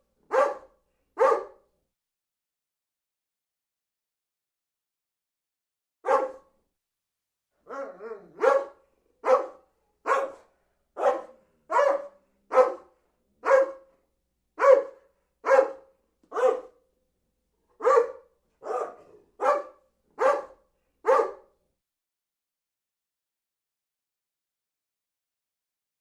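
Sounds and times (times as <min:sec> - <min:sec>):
dog barking: 0:00.3 - 0:01.7, 0:06.0 - 0:06.6, 0:07.6 - 0:14.0, 0:14.6 - 0:16.9, 0:17.8 - 0:21.6.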